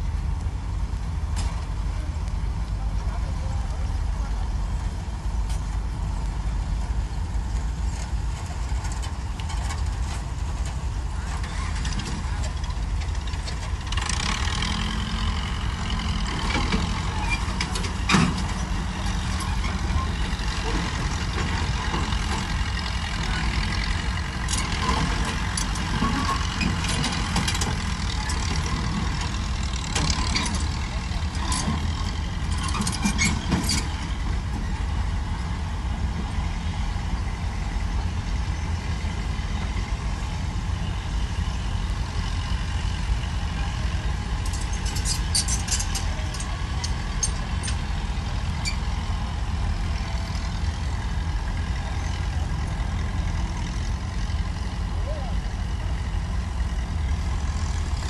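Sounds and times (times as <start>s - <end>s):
heavy machinery diesel engines: 0.0s - 58.0s
metallic knocks and clanks: 16.2s - 22.6s.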